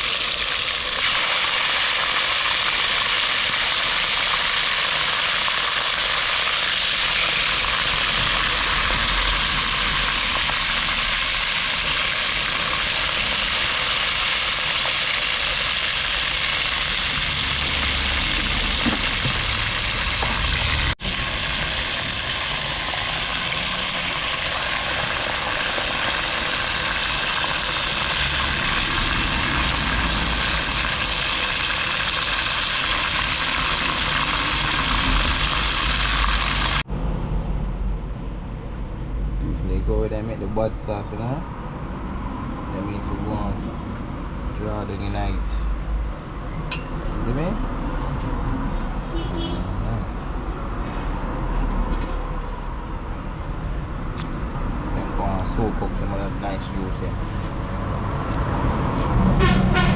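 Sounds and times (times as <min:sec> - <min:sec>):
fish sizzling in hot oil: 0:00.0 - 0:36.8.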